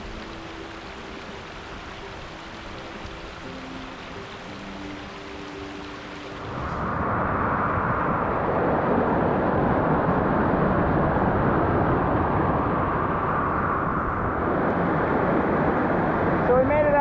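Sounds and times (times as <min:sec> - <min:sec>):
river rushing over rocks: 0:00.0 - 0:13.5
quiet background music: 0:00.0 - 0:17.0.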